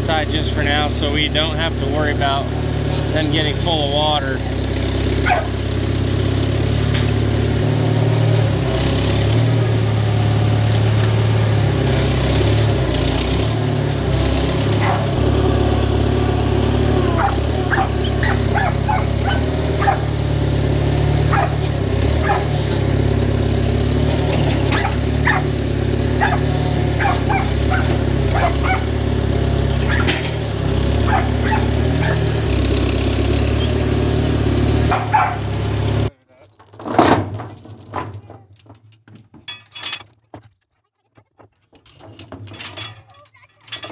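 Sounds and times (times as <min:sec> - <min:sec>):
tractor engine running: 0:00.0 - 0:36.1, 0:36.7 - 0:38.7
dog barking: 0:05.2 - 0:05.6, 0:14.7 - 0:15.2, 0:17.0 - 0:20.2, 0:21.2 - 0:22.8, 0:24.6 - 0:25.6, 0:26.2 - 0:29.0, 0:29.8 - 0:30.2, 0:31.0 - 0:32.4, 0:34.8 - 0:35.6.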